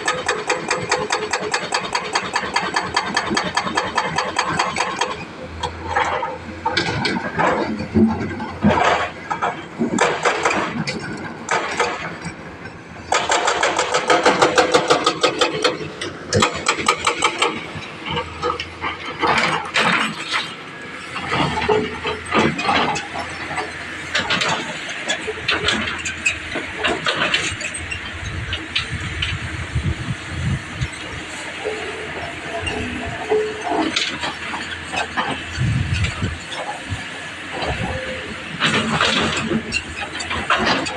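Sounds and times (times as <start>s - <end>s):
excavator engine running: 0.0s - 40.9s
hydraulic hammer breaking rock: 5.9s - 12.1s, 13.1s - 18.5s.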